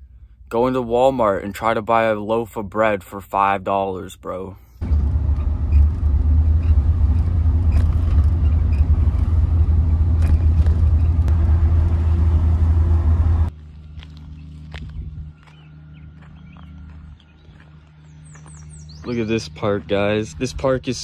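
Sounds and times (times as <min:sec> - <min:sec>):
vehicle driving rumble: 0:04.8 - 0:21.0.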